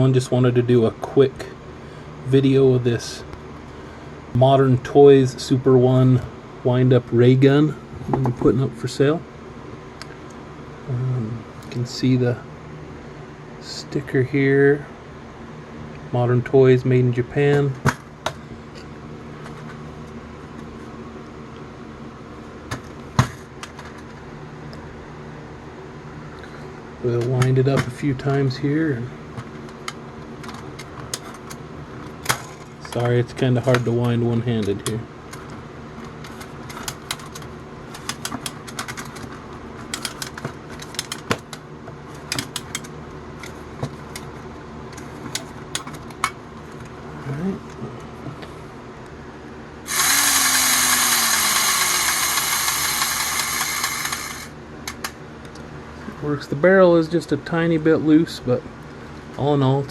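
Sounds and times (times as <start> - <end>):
machinery hum: 0.0 - 59.9
toy ray gun clicks: 49.9 - 55.0.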